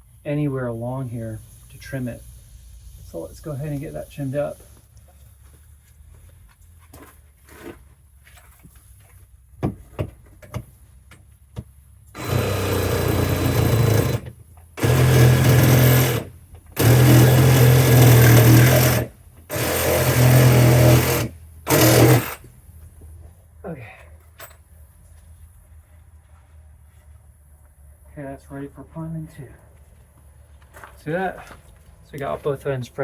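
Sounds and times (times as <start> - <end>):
power saw cutting plastic pipe: 12.2 - 22.5.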